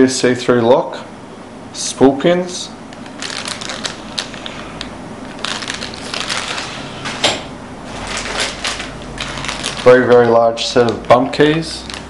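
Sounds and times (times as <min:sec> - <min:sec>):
packaging crinkling and rustling: 0:03.0 - 0:07.2, 0:07.9 - 0:12.0.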